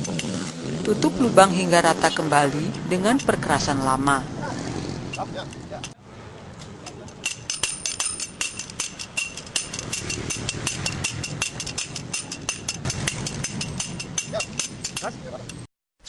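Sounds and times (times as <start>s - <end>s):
hand tool tamping with metallic clinks: 0.0s - 0.5s, 2.6s - 3.5s, 6.6s - 15.7s.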